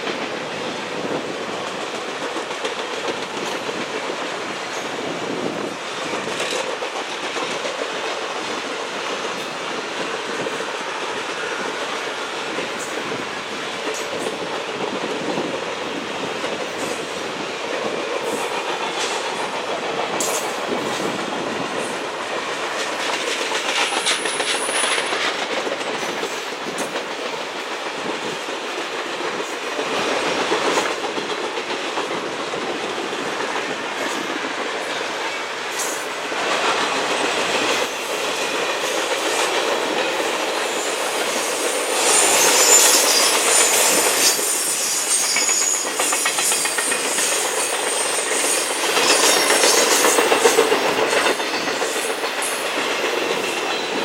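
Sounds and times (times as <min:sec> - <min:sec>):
train cars rolling clickety-clack: 0:00.0 - 0:54.0
train wheel squeal: 0:23.1 - 0:25.6, 0:37.1 - 0:54.0.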